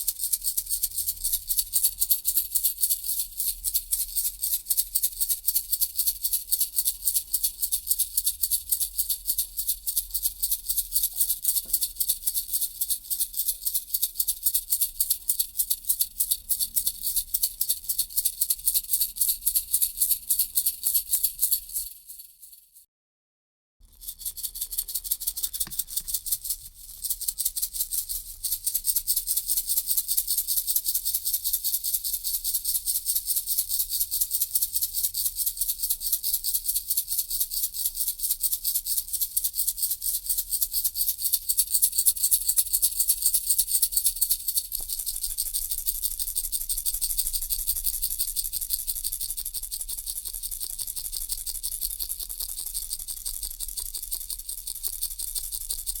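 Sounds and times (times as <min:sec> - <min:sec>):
baby rattle shaken: 0:00.0 - 0:22.8, 0:23.9 - 0:56.0.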